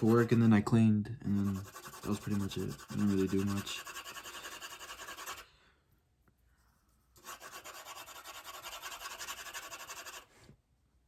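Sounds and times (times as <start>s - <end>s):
drawing tool scratching on paper: 0.0s - 0.6s, 1.4s - 5.4s, 7.2s - 10.3s.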